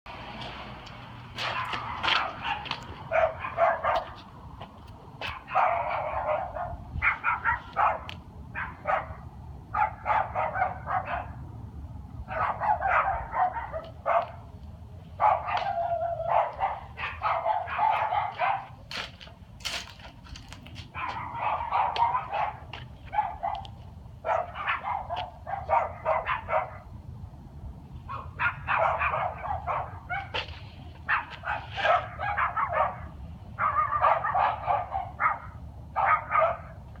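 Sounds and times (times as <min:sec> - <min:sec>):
dog barking: 0:01.4 - 0:04.2, 0:05.2 - 0:09.2, 0:09.8 - 0:11.4, 0:12.3 - 0:14.4, 0:15.2 - 0:18.8, 0:21.0 - 0:26.9, 0:28.1 - 0:30.4, 0:31.1 - 0:36.8.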